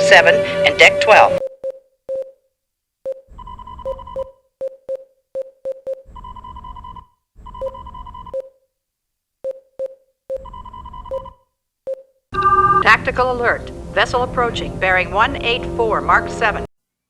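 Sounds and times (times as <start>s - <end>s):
sharp electronic pips: 9.5s - 15.8s
steady electronic tones: 9.5s - 16.7s.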